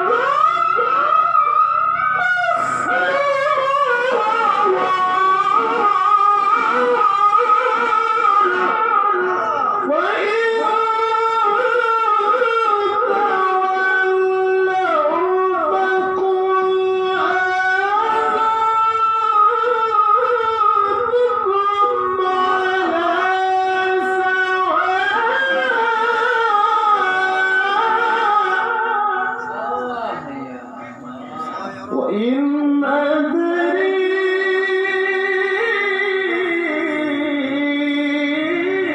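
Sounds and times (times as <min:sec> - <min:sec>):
man reciting in melismatic chant: 0:00.0 - 0:38.9.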